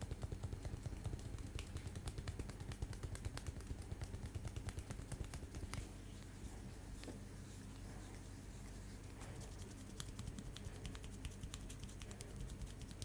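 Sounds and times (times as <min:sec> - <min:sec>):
rapid tapping on head: 0:00.0 - 0:06.0, 0:09.0 - 0:13.0.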